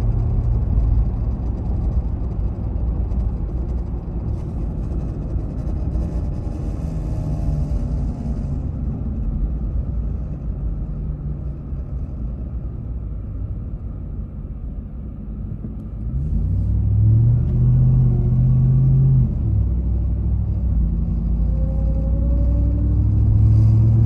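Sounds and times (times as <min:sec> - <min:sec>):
low vibration drone: 0:00.0 - 0:24.0
road and drivetrain rumble: 0:00.0 - 0:24.0.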